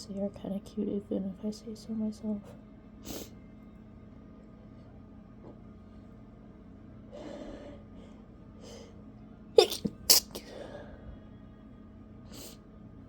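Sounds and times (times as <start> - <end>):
stifled sneezes: 9.6 - 10.6
breathy inhales: 10.4 - 11.2.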